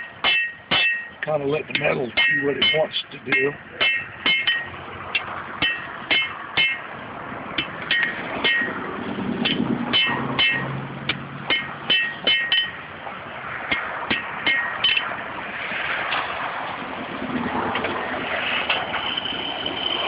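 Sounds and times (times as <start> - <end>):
hammer striking iron on anvil: 0.0 - 6.9, 7.6 - 12.9, 13.7 - 15.2.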